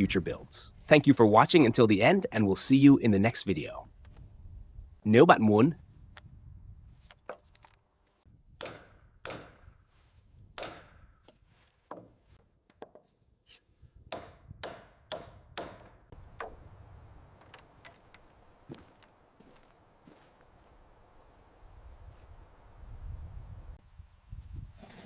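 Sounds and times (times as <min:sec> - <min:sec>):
hand tool chopping wood: 0:08.6 - 0:09.7, 0:10.6 - 0:12.2.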